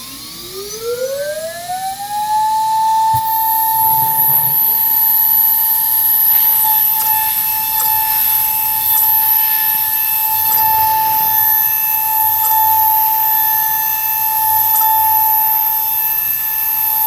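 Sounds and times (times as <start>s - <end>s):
high whistle: 0.0s - 17.0s
router spindle high-pitched whine: 0.0s - 17.0s.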